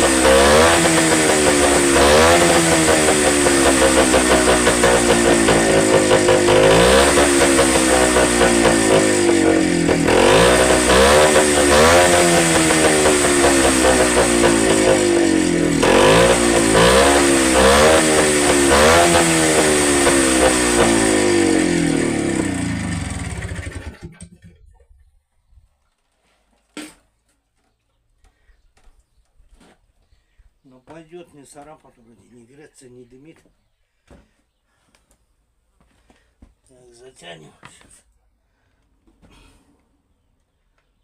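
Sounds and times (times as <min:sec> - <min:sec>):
motorcycle engine revving: 0:00.0 - 0:24.5.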